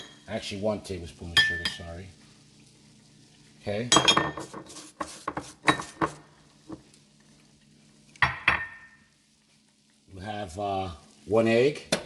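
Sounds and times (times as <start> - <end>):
utensils clinking against bowl: 3.9 - 4.6.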